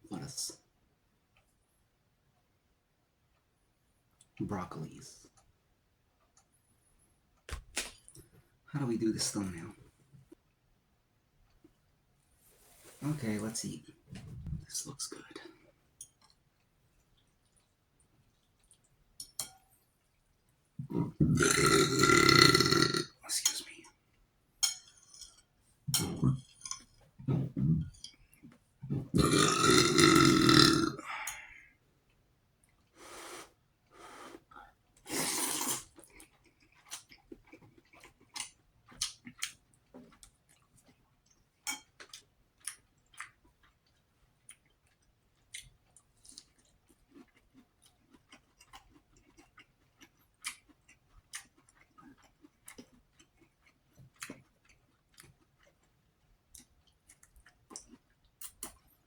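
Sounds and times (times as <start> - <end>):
chewing: 15.4 - 24.0, 24.6 - 31.8, 34.6 - 59.0
person burping loudly: 20.8 - 23.1, 28.9 - 31.6.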